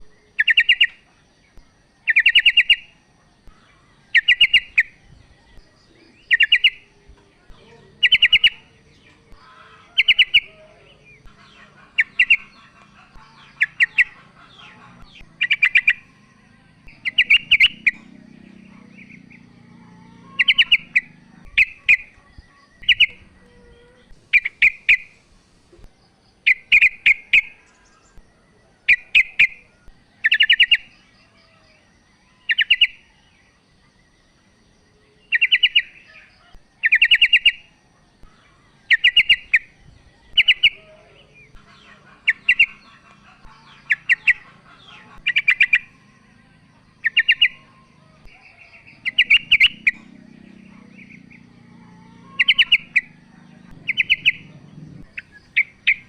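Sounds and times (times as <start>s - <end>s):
bulbul calling: 0.0s - 31.2s, 32.3s - 33.2s, 35.2s - 56.0s.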